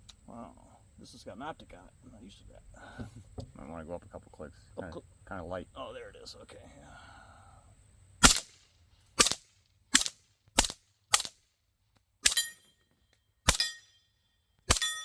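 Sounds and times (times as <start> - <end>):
suppressed gunshots: 8.2 - 8.6, 9.2 - 11.4, 13.5 - 13.7, 14.7 - 15.0
bullets ringing on steel target: 12.2 - 12.9, 13.5 - 14.1, 14.7 - 15.0.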